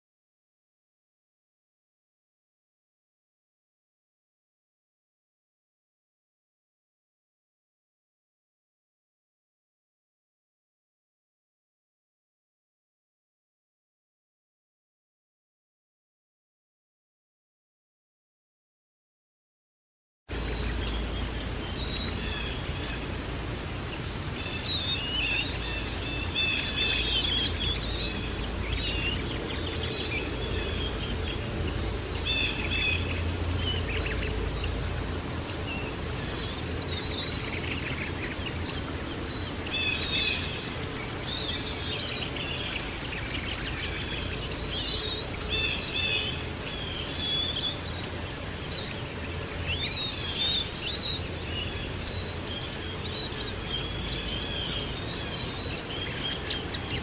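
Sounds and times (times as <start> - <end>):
songbirds chirping and trilling: 20.3 - 57.0.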